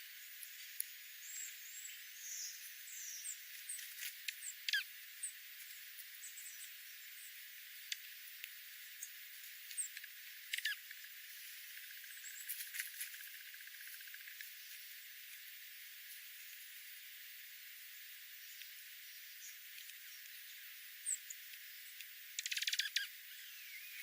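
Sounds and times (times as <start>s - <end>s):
faint steady hiss: 0.0s - 24.0s
birds chirping: 1.1s - 8.1s, 8.8s - 12.5s, 18.4s - 24.0s.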